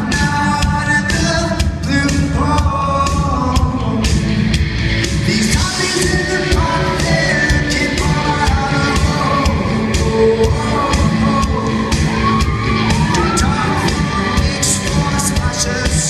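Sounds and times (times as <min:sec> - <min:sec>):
person singing: 0:00.0 - 0:04.5, 0:05.1 - 0:16.0
live rock band playing: 0:00.0 - 0:16.0.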